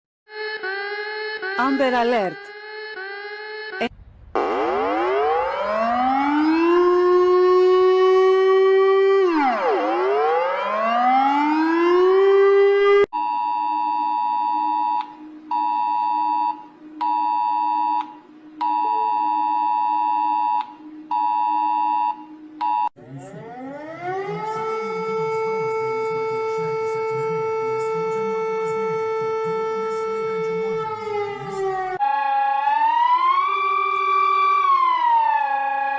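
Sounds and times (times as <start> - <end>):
rising siren tone: 0.3 - 13.1, 13.7 - 35.9
low electronic drone: 3.8 - 9.8, 22.3 - 32.0
alarm beeps: 13.2 - 32.0.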